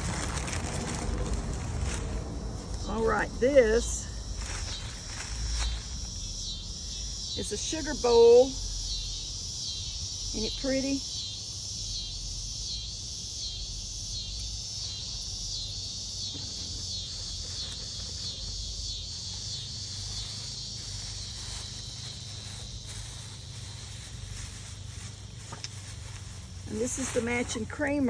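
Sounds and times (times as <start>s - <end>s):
cicadas droning: 0.0s - 28.0s.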